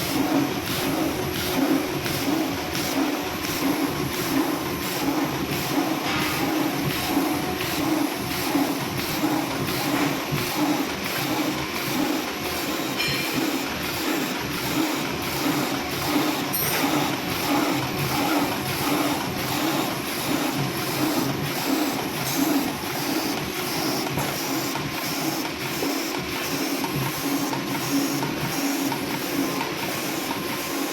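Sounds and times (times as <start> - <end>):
machine rhythmic mechanical clatter: 0.0 - 30.9.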